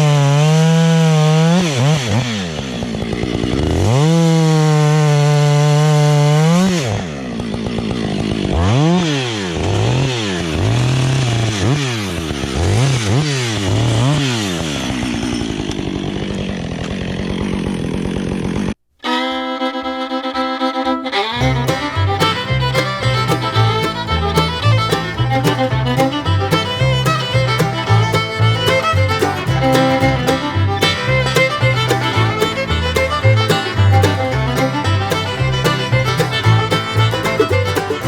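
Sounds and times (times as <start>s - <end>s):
chainsaw cutting and revving: 0.0s - 18.8s, 21.4s - 38.0s
fiddle music: 19.0s - 38.0s.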